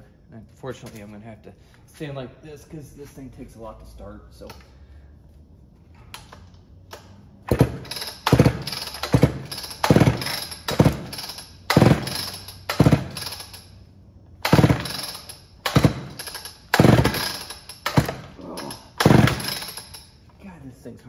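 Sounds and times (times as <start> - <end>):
chainsaw engine turning over: 6.9 - 13.7, 14.4 - 20.1
recoil starter rope pulls: 7.5 - 13.7, 14.4 - 20.1.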